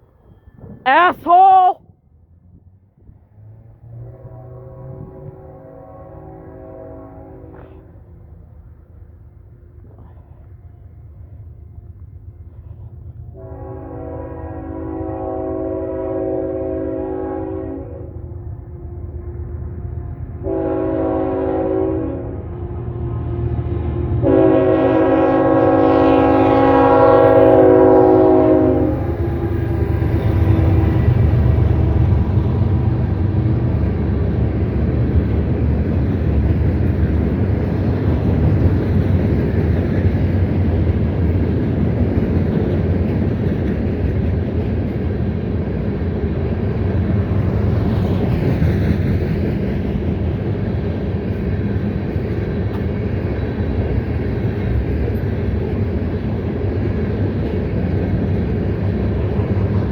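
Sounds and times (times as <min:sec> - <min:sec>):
train rumbling past: 0:00.0 - 0:59.9
train horn: 0:03.8 - 0:08.0, 0:13.3 - 0:18.4, 0:20.1 - 0:32.0.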